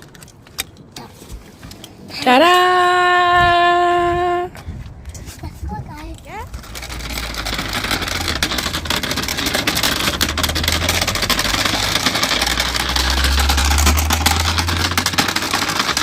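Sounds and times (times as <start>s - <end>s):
car engine and road noise: 3.3s - 16.0s.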